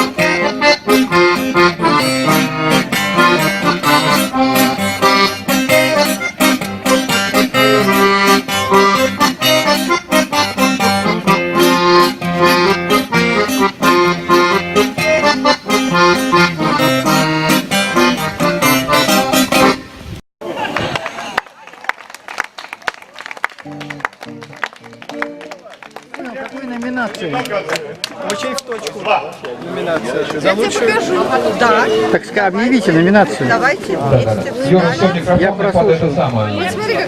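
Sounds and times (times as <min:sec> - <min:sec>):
instrumental music with beat: 0:00.0 - 0:19.9, 0:23.6 - 0:25.5.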